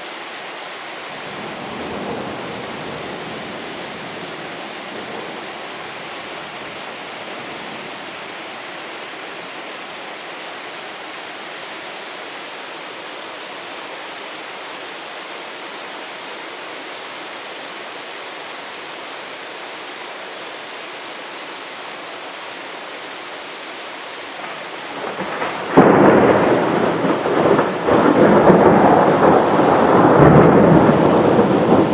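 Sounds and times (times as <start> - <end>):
steady rain hissing: 0.0 - 31.9
thunder clap: 1.4 - 8.4, 24.4 - 31.9.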